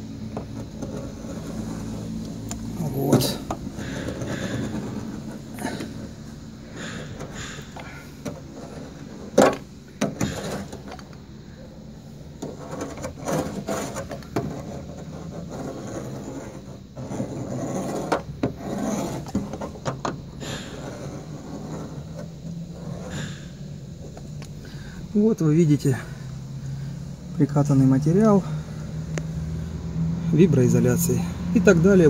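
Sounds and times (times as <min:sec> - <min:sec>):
roller rubbing over damping sheet: 0:00.0 - 0:24.3.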